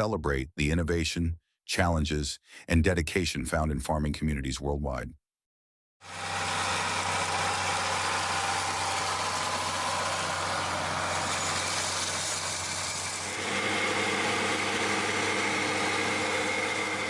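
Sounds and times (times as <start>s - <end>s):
tractor engine running: 6.2s - 17.0s.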